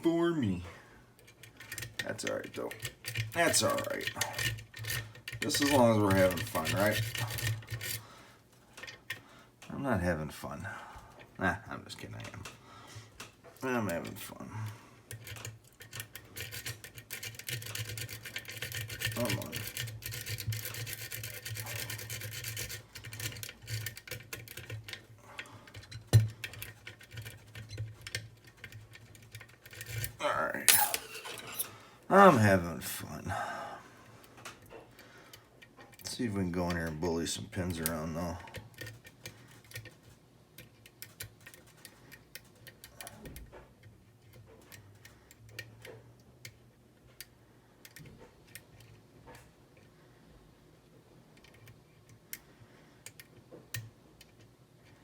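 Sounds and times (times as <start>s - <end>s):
lock picks scraping and clicking: 1.2s - 8.0s, 15.1s - 31.8s, 34.6s - 49.9s, 51.3s - 52.4s.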